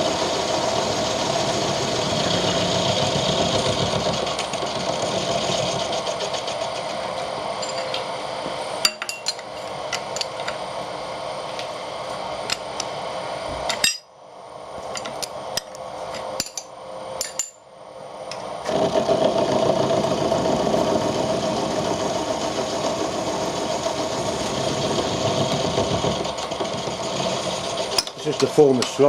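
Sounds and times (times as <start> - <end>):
power tool running: 0.0 - 8.6, 18.4 - 29.0.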